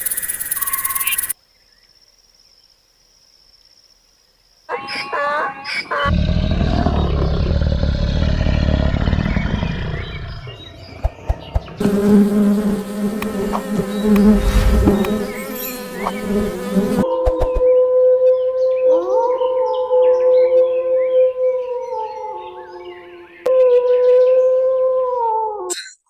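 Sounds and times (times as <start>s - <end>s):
insect buzzing: 0.0s - 1.4s, 11.8s - 17.1s
low rumbling: 14.1s - 15.5s.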